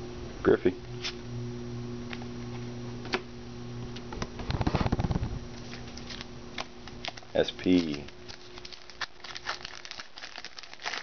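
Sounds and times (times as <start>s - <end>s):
steady low hum: 0.0s - 11.0s
cards clicking: 6.0s - 8.1s
cards flicked ticking and snapping: 6.0s - 9.6s.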